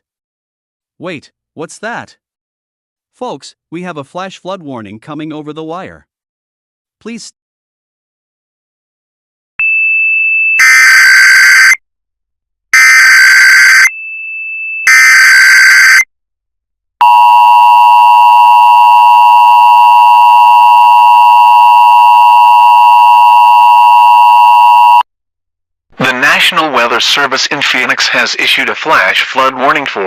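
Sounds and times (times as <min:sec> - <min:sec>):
two-tone attention signal: 0:17.0 - 0:25.0.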